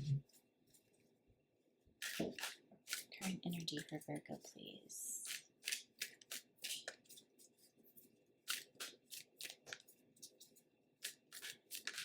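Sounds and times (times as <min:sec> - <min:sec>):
cards being shuffled: 0:05.3 - 0:12.0.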